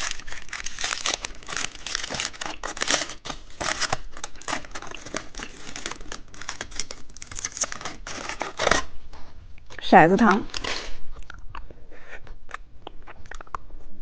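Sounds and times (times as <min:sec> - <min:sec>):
plastic wrapper crinkling and tearing: 0:00.0 - 0:09.0, 0:10.3 - 0:11.4.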